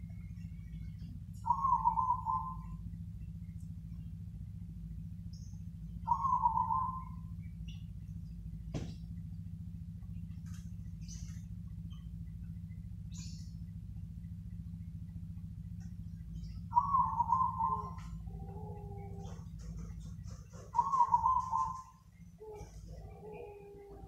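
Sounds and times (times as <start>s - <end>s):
dove cooing: 0.0s - 2.9s, 5.9s - 7.4s, 16.3s - 24.0s
steady low hum: 0.0s - 24.0s.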